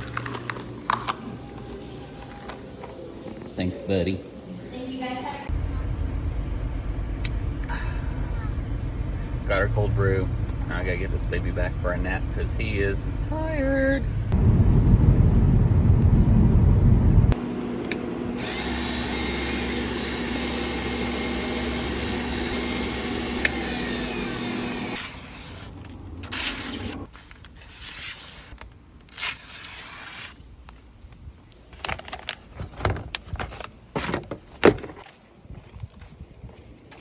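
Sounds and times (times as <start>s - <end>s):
power tool motor grinding: 18.4s - 27.1s.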